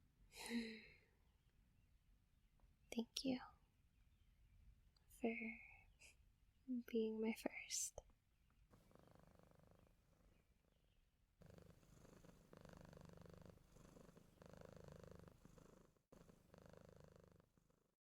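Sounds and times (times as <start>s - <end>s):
faint cat purring: 7.5s - 18.0s.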